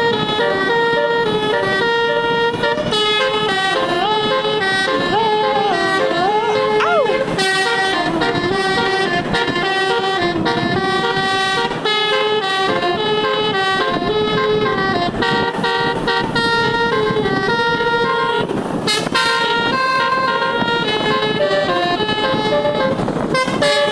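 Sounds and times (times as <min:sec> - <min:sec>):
multi-tone bus air horn melodies: 0:00.0 - 0:23.9.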